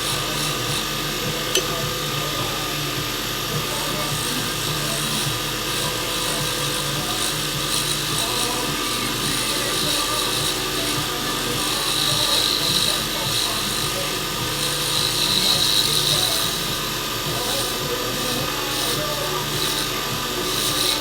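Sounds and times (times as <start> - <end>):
turning tool cutting wood hiss: 0.0 - 21.0
wood lathe spinning: 0.0 - 21.0.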